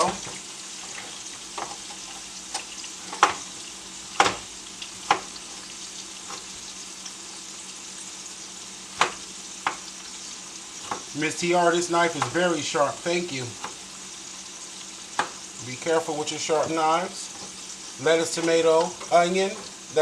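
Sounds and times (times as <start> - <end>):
burgers sizzling in a frying pan: 0.0 - 20.0.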